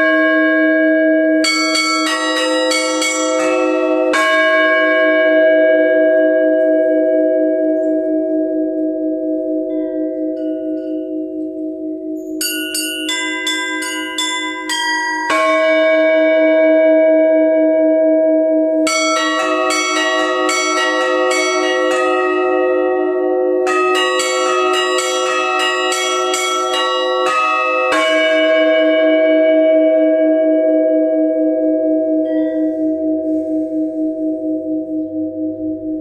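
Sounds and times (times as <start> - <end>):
deep bells humming: 0.0 - 36.0
small high bells struck: 12.2 - 16.3
heavy bell stroke: 32.2 - 36.0.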